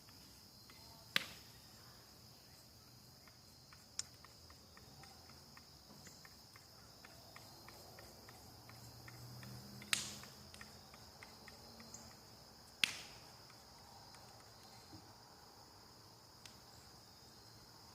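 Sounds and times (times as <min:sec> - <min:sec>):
crickets chirring: 0:00.0 - 0:17.9
faint insect ticking: 0:00.0 - 0:17.9
sharp cracks: 0:06.5 - 0:14.4.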